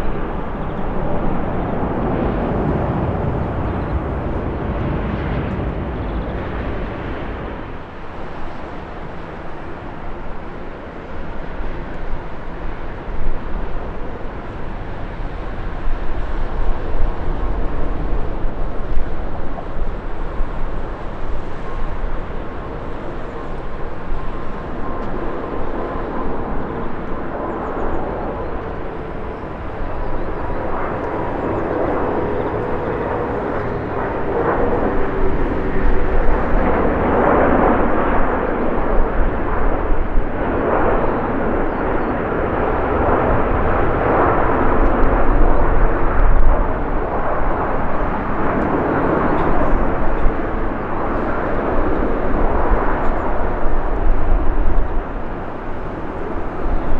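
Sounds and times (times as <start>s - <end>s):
jet airliner engines whining: 0.0s - 56.9s.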